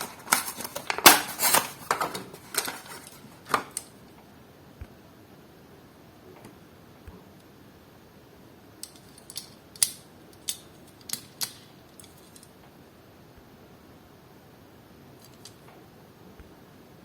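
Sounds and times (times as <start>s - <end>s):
plastic packaging clicks and snips: 0.0s - 3.9s.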